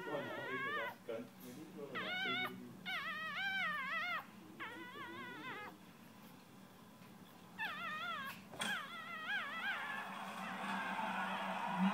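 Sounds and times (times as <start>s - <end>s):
puppies whimpering: 0.0s - 1.1s, 1.9s - 5.8s, 7.6s - 10.9s.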